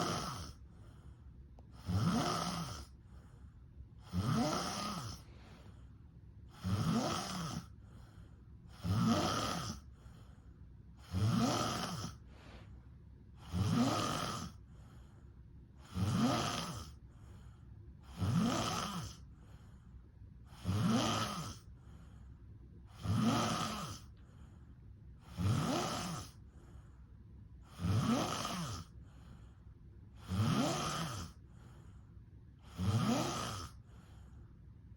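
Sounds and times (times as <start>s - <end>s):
person snoring: 0.0s - 0.6s, 1.7s - 3.0s, 4.0s - 5.5s, 6.5s - 8.0s, 8.7s - 9.9s, 11.0s - 12.7s, 13.3s - 15.0s, 15.8s - 17.0s, 18.0s - 19.2s, 20.5s - 21.7s, 22.9s - 24.2s, 25.2s - 26.5s, 27.6s - 29.4s, 30.2s - 31.8s, 32.6s - 34.2s.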